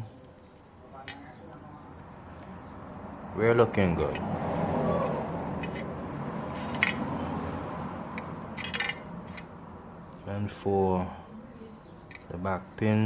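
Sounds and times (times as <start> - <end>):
small tools clicking and tapping: 5.0 - 5.9, 6.5 - 7.1, 8.1 - 9.5.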